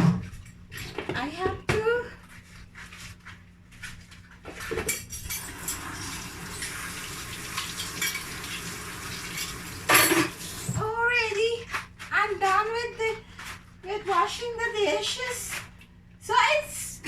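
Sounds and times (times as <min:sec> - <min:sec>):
dishes and cutlery clinking: 0:04.6 - 0:06.7, 0:07.6 - 0:08.6, 0:09.3 - 0:10.4
tap running water: 0:05.3 - 0:10.9.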